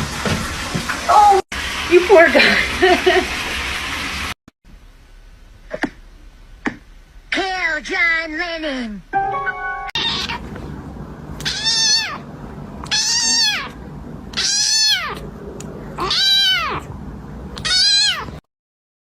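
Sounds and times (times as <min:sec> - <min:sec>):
cat meowing loudly: 0:10.0 - 0:10.4, 0:11.4 - 0:12.2, 0:12.8 - 0:15.2, 0:16.0 - 0:16.9, 0:17.6 - 0:18.4.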